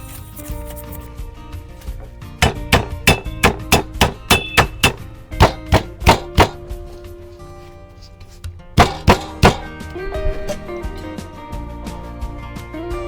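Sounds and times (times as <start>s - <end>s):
soft background music: 0.0s - 8.8s, 9.4s - 13.0s
knife chopping on cutting board: 2.4s - 7.1s, 8.8s - 9.8s.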